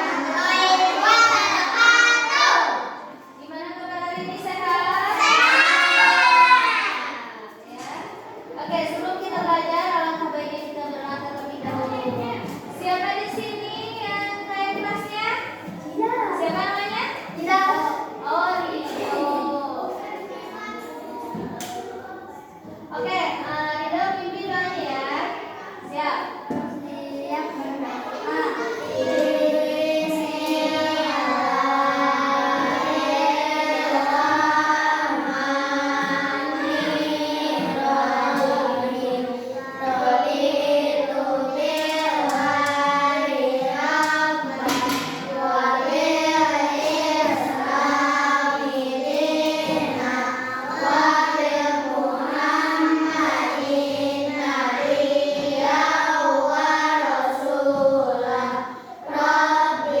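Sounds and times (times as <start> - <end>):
children chanting in unison: 0.0 - 3.2, 4.2 - 7.4, 26.8 - 60.0.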